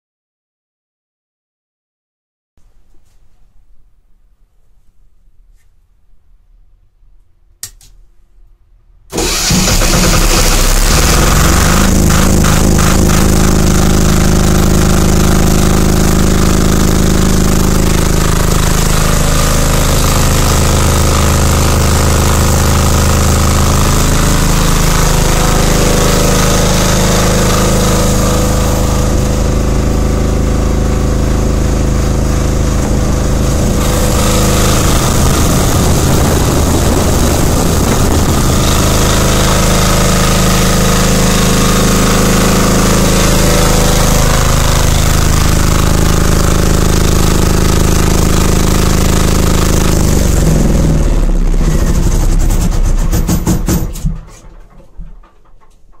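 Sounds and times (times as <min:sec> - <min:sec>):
diesel generator engine clattering: 0:19.8 - 0:56.0.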